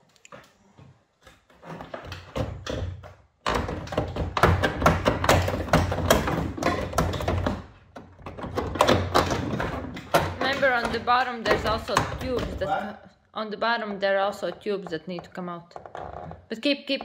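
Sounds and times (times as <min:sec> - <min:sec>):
knocking and rattling on car parts: 0:01.4 - 0:12.7.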